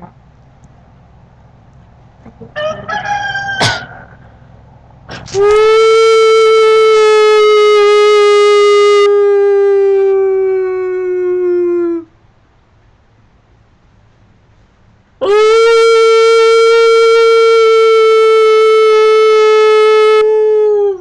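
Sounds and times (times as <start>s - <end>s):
person howling like a wolf: 5.4s - 12.1s, 15.2s - 21.0s.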